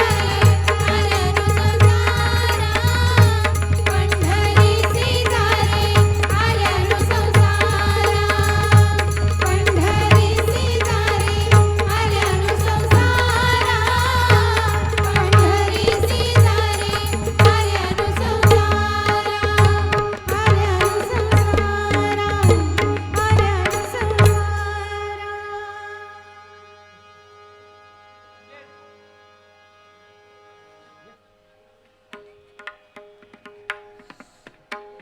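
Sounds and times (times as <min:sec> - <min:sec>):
tabla and pakhawaj drums: 0:00.0 - 0:25.6, 0:32.1 - 0:35.0
person singing devotional song: 0:00.0 - 0:27.2.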